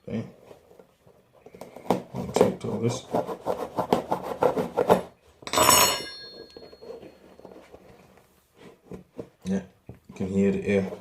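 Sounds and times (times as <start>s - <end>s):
scratchy rubbing strokes: 2.6s - 5.1s.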